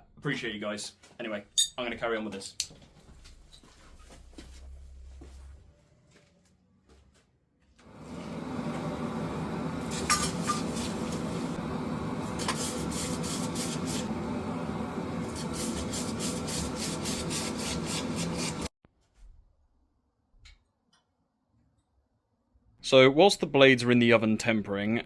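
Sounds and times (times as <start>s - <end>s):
rhythmic scraping of blade: 15.3s - 18.7s.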